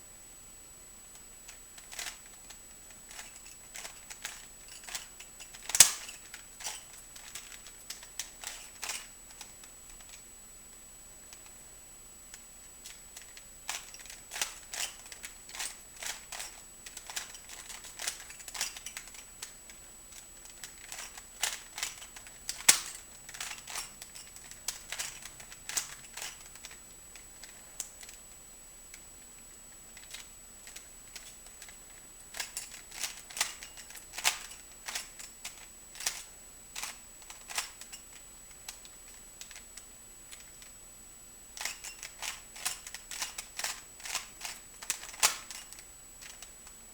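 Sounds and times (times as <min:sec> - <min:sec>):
plastic puzzle cube clicking: 0:01.8 - 0:10.2, 0:12.3 - 0:28.2, 0:38.6 - 0:40.7, 0:41.6 - 0:46.5.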